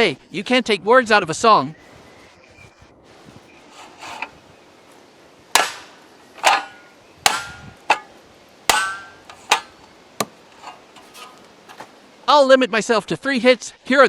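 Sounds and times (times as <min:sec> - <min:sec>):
knife striking sheet metal: 0:03.7 - 0:04.4, 0:05.6 - 0:08.1, 0:08.7 - 0:11.8.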